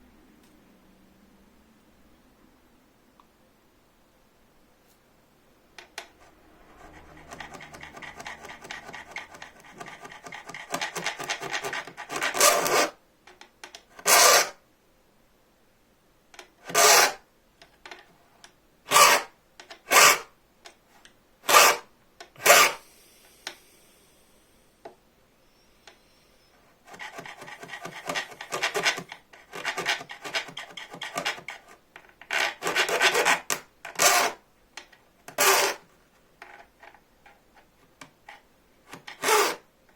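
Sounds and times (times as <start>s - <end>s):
hand file rasping on saw blade: 6.6s - 13.0s, 16.7s - 17.2s, 18.9s - 19.3s, 19.9s - 20.3s, 21.5s - 22.8s, 26.9s - 31.6s, 32.3s - 34.4s, 35.4s - 35.8s, 39.1s - 39.6s.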